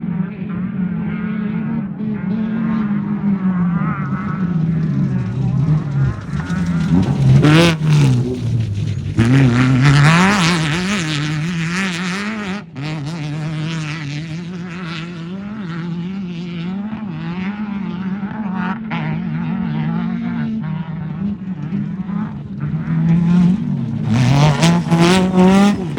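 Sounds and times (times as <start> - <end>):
race car engine revving: 0.0 - 25.9.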